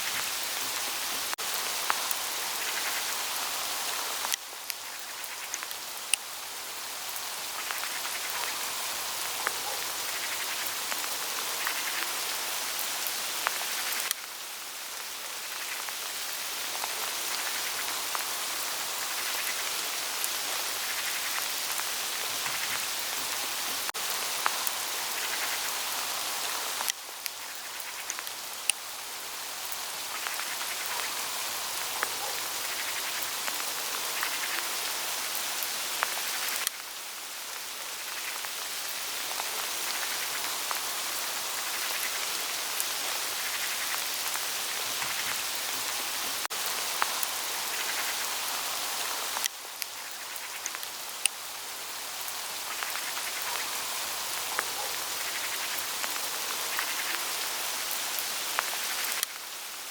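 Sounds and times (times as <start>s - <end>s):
hail ticking on leaves: 0.0s - 59.9s.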